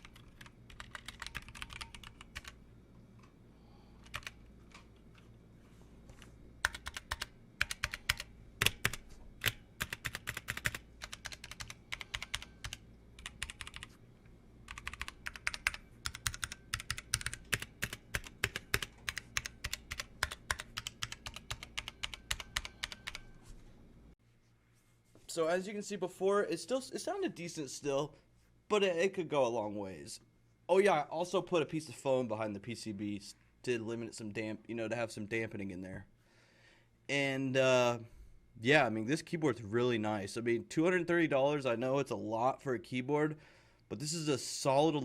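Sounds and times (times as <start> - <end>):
mechanical keyboard typing: 0.0 - 2.6, 4.0 - 4.4, 6.6 - 13.9, 14.7 - 23.3.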